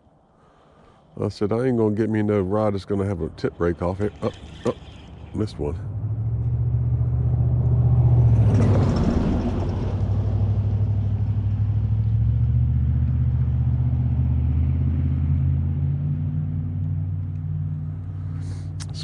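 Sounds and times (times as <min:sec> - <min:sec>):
vehicle engine rumbling: 0:00.0 - 0:19.0.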